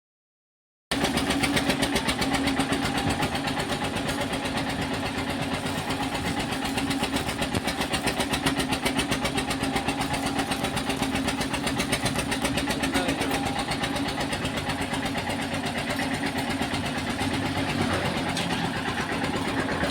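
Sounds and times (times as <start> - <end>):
engine idling: 0.9 - 19.9.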